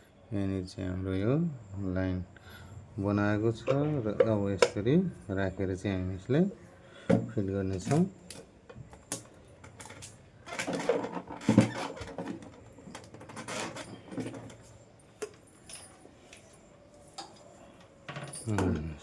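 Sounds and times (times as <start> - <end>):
metal parts clicking and clattering: 9.1 - 16.0.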